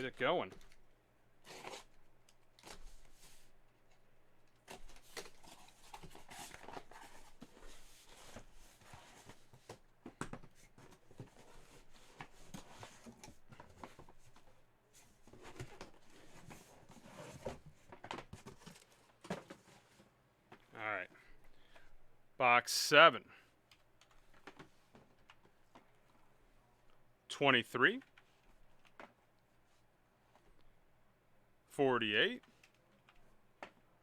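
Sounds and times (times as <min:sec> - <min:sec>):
cardboard packaging rustling: 0:04.6 - 0:09.8.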